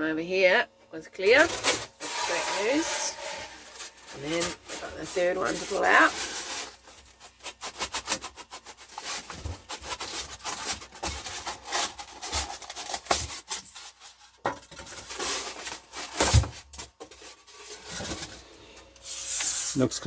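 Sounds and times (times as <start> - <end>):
insulation scratching and rubbing: 1.2 - 14.2, 19.0 - 20.0.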